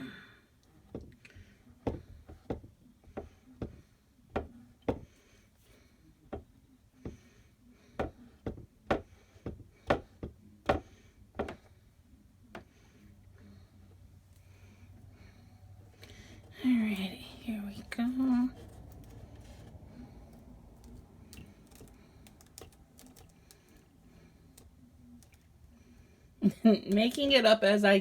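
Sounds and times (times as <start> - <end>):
hand tools tapping on wooden board: 0.9 - 3.8, 4.4 - 5.1, 8.0 - 11.7, 20.8 - 23.7.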